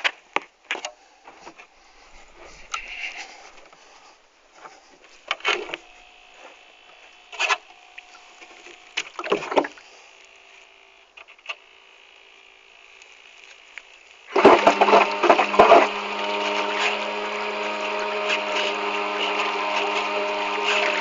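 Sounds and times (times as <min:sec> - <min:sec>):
small motor whine: 0:04.6 - 0:21.0.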